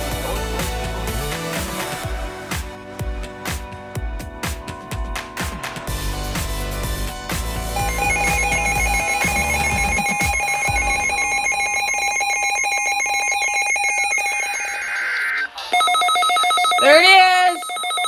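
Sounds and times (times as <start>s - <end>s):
falling electronic sweep: 5.9s - 13.8s
two-pitch trilling alert tone: 7.8s - 17.8s.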